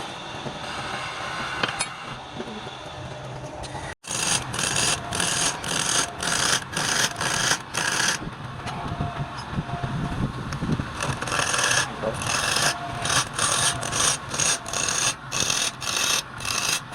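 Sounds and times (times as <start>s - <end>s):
wood lathe humming: 4.0s - 8.2s, 10.8s - 16.9s
tool scraping spinning wood: 4.0s - 8.3s, 10.6s - 16.9s.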